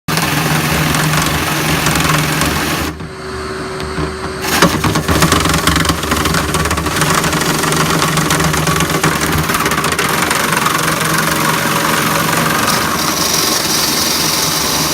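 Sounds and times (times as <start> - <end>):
motor hum: 0.1 - 14.9
sharp scraping knocks: 3.8 - 14.9
loud rushing rattling noise: 4.4 - 14.9.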